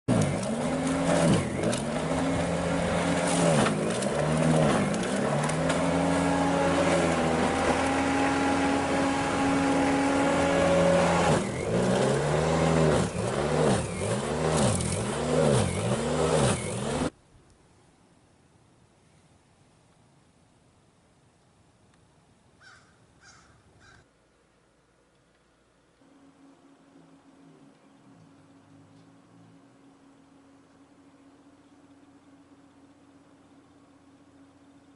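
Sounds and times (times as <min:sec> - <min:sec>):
snow thrower running: 0:00.1 - 0:17.1, 0:26.0 - 0:34.9.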